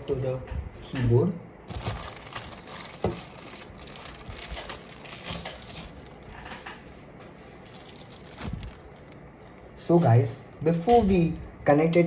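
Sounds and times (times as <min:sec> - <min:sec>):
packaging crinkling: 0:01.7 - 0:06.8, 0:07.5 - 0:09.5.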